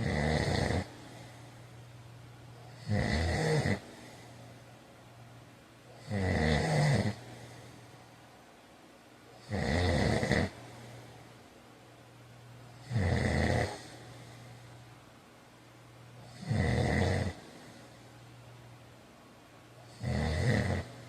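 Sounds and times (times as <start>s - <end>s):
man snoring: 0.0s - 1.3s, 2.7s - 4.2s, 6.0s - 7.6s, 9.4s - 10.8s, 12.8s - 14.3s, 16.2s - 17.8s, 19.9s - 21.0s.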